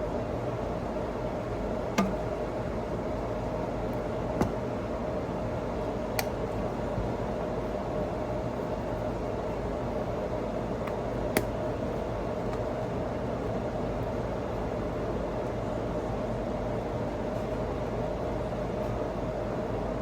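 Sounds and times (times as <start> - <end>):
steady mechanical hum: 0.0 - 20.0.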